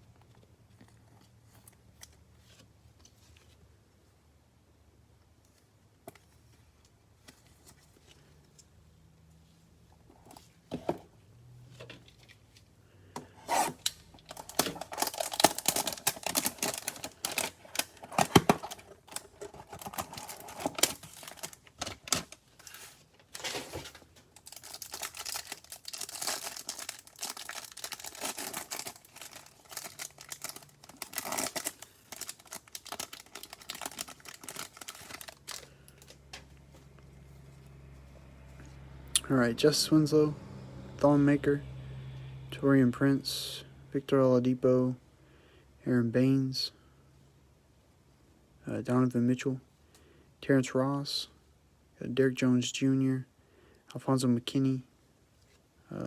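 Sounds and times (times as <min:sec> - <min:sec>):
packaging tearing and crinkling: 0:13.5 - 0:23.8, 0:24.4 - 0:36.1.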